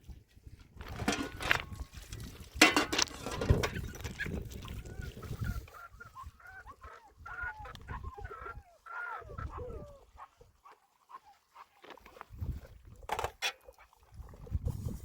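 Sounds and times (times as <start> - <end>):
hens clucking: 2.6 - 14.6.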